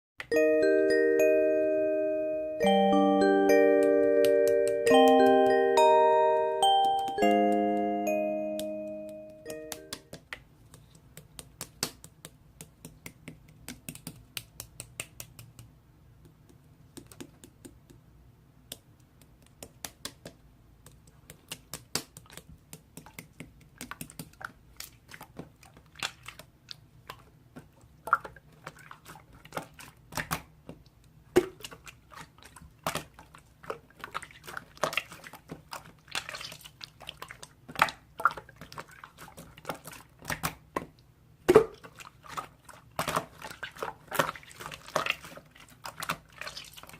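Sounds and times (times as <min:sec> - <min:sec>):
fingers tapping on keys: 0:02.6 - 0:18.0.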